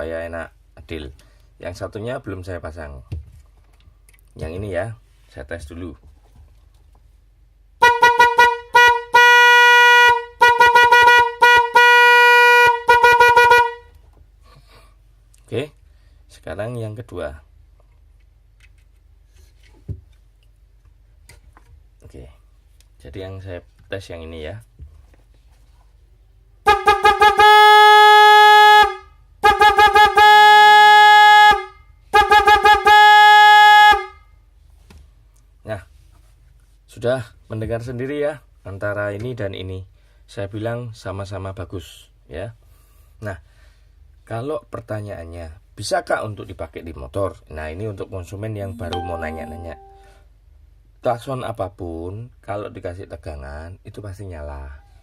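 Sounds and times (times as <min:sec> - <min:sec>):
snail horn honking: 0:07.8 - 0:13.8
electric horn beeps and blasts: 0:48.8 - 0:50.2.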